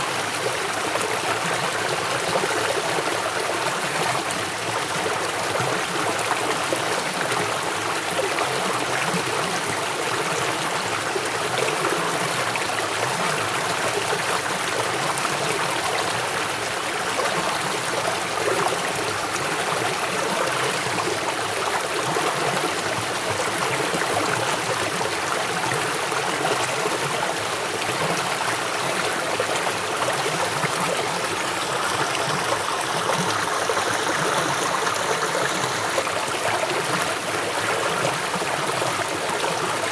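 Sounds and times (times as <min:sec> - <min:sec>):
gurgling trickle: 0:00.1 - 0:39.9
river water rushing over rocks: 0:20.8 - 0:39.9.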